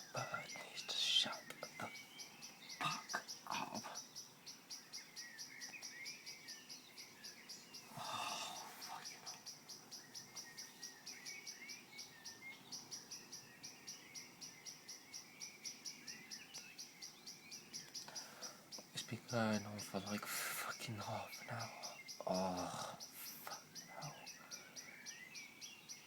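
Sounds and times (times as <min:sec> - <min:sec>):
birds chirping softly: 0:00.0 - 0:26.0.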